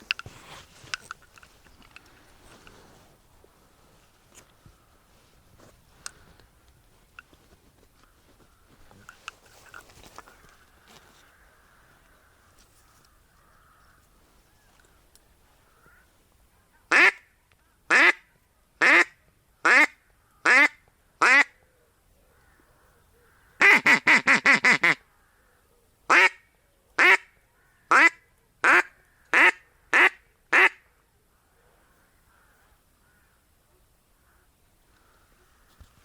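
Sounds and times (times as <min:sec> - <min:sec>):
duck quacking: 0:16.9 - 0:17.2, 0:23.6 - 0:25.0, 0:27.9 - 0:30.8.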